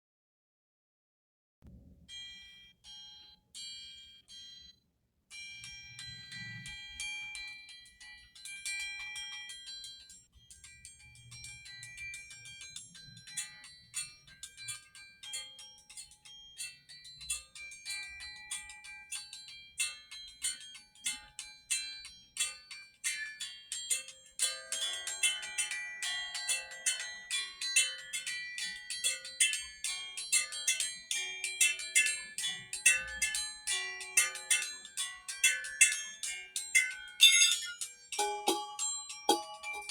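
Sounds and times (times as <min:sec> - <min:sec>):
bell-like struck notes: 0:31.6 - 0:39.9.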